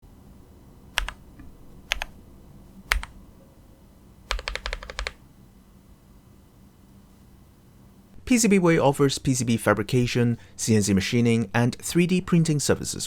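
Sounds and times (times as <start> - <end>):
mechanical keyboard keystrokes: 1.0 - 2.2, 2.9 - 3.2, 4.3 - 5.2.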